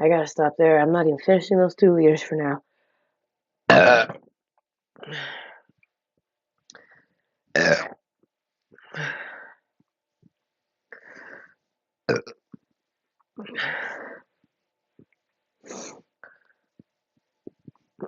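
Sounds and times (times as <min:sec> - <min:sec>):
woman burping: 0:03.7 - 0:04.2, 0:07.6 - 0:08.0, 0:12.1 - 0:12.4.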